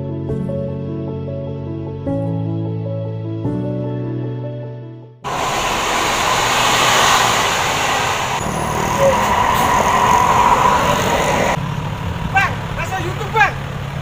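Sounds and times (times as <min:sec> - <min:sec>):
background music: 0:00.0 - 0:05.2
loud steady rushing noise: 0:05.2 - 0:14.0.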